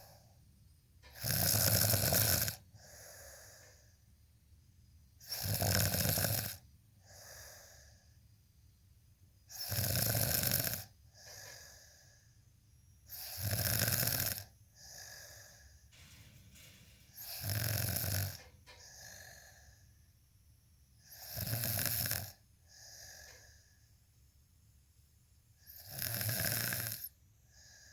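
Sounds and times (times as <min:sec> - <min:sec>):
person snoring: 0:01.1 - 0:03.8, 0:05.2 - 0:08.0, 0:09.5 - 0:12.2, 0:13.1 - 0:15.7, 0:17.1 - 0:19.8, 0:21.1 - 0:23.7, 0:25.6 - 0:27.9
soft breath: 0:02.7 - 0:04.1, 0:07.0 - 0:08.3, 0:11.1 - 0:12.6, 0:14.7 - 0:20.1, 0:22.6 - 0:24.0, 0:27.0 - 0:27.9.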